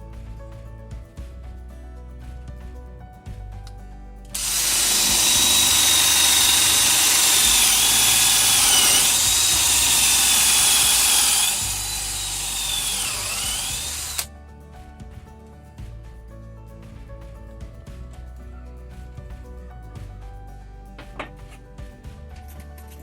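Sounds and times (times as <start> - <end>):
cordless drill whining: 4.4 - 14.3.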